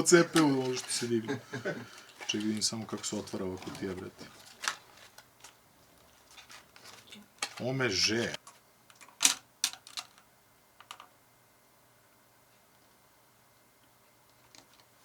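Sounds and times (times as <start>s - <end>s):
packaging clicks and taps: 1.8s - 10.2s.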